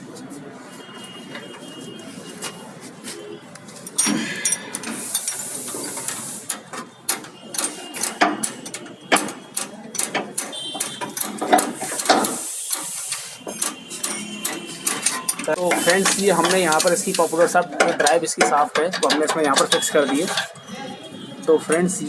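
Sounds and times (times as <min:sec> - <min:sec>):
metal tools clicking and rattling: 0:03.8 - 0:20.6.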